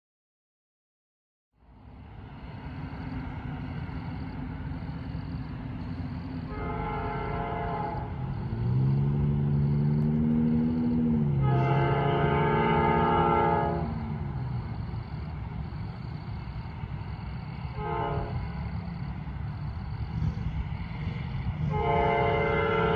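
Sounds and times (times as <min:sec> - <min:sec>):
diesel locomotive engine rumbling: 0:01.6 - 0:22.9
locomotive air horn: 0:06.5 - 0:08.9, 0:11.3 - 0:14.2, 0:17.7 - 0:18.5, 0:21.6 - 0:22.9.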